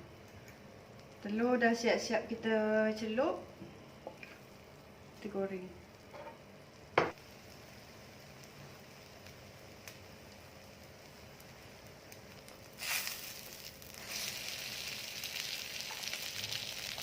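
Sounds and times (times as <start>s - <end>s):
bread sizzling in butter: 7.1s - 17.0s.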